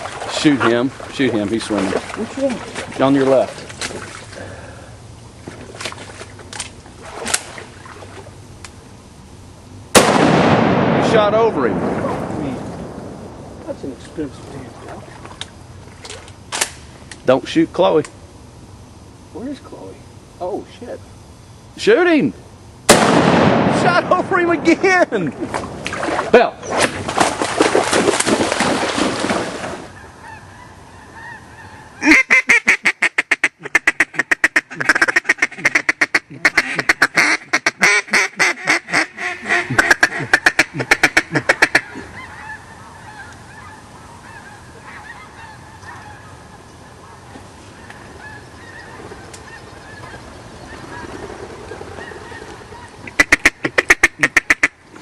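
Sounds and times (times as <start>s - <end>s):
waterfowl honking calls: 0.0s - 4.1s, 29.8s - 54.9s
loud burst of noise: 9.9s - 13.8s, 22.8s - 25.2s.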